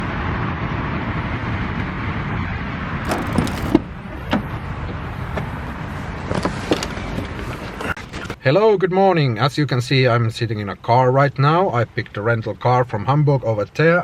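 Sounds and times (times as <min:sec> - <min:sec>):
brief rattle: 0:03.1 - 0:04.3
car rumble: 0:03.1 - 0:05.0.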